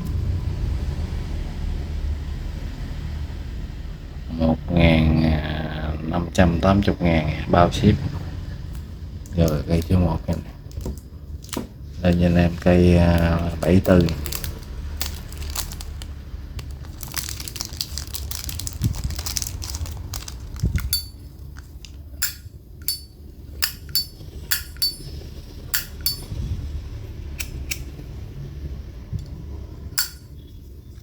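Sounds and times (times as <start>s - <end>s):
rustling: 10.3s - 21.9s
metal lighter lid clicking: 22.2s - 25.0s.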